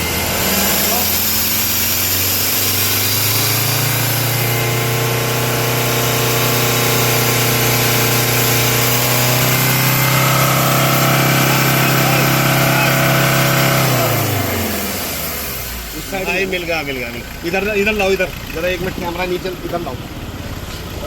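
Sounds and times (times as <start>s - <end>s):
engine whistle: 0.0s - 15.9s
diesel engine revving: 0.0s - 21.0s.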